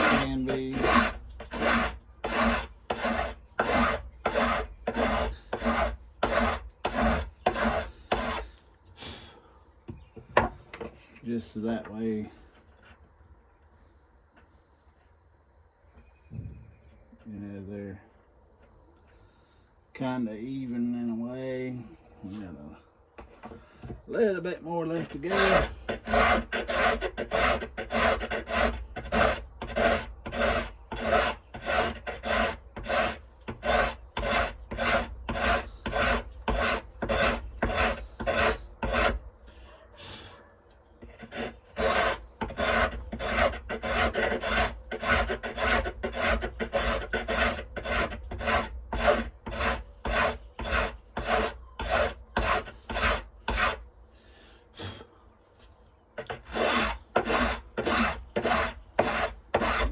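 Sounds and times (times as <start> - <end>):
hand file strokes: 0.0 - 8.6, 24.8 - 40.2, 41.0 - 53.8, 55.6 - 59.9.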